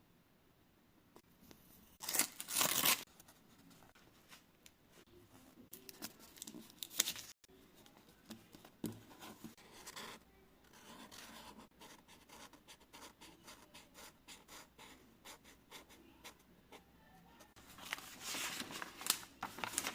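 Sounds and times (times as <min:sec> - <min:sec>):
paper scratching and rustling: 0:17.6 - 0:19.9.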